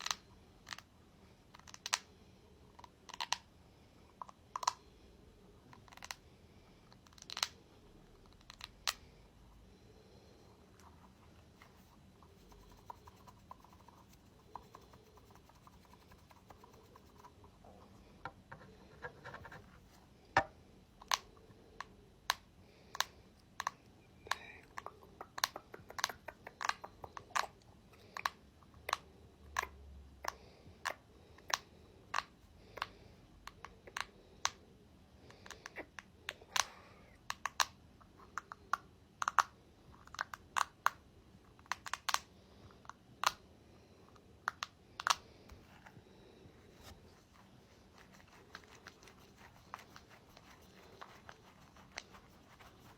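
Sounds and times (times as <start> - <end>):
faint scratching on a ball: 10.3 - 20.2, 45.4 - 52.9.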